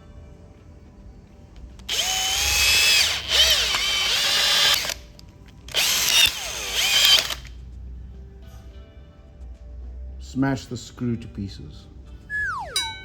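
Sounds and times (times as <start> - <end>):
power drill driving a screw: 1.9 - 5.1, 5.7 - 7.5.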